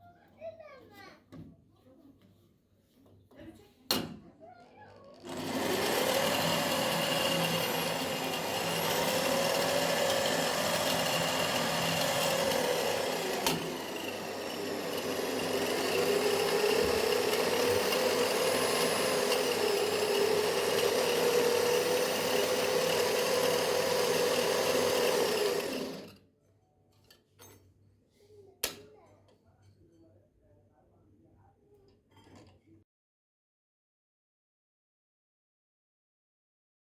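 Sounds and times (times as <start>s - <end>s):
belt sander motor whining: 5.2s - 26.1s.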